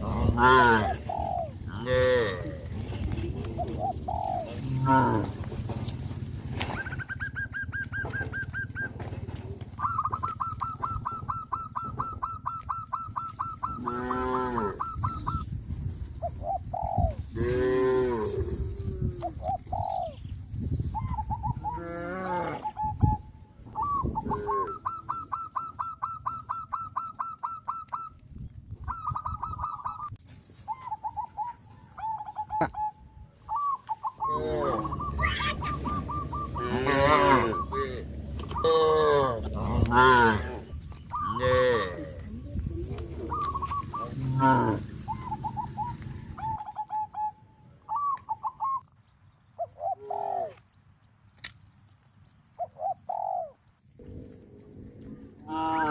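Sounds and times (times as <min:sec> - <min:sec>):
cattle mooing: 0:00.0 - 0:01.0, 0:01.7 - 0:02.8, 0:04.5 - 0:05.4, 0:13.8 - 0:14.8, 0:17.4 - 0:18.6, 0:21.8 - 0:22.8, 0:34.3 - 0:42.4, 0:43.0 - 0:45.1, 0:54.1 - 0:55.9
steady low rumble: 0:34.3 - 0:41.4.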